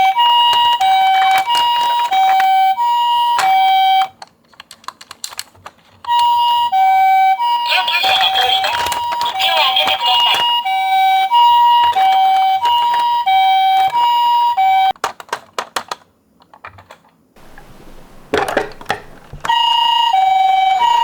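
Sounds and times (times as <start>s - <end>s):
toy two-tone siren: 0.0s - 4.2s, 6.1s - 15.0s, 19.5s - 21.0s.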